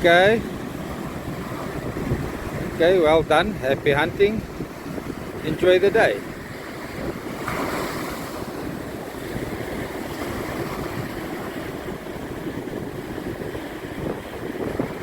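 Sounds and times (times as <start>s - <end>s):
waves and surf rushing: 0.0s - 15.0s
wind noise on microphone: 0.0s - 15.0s.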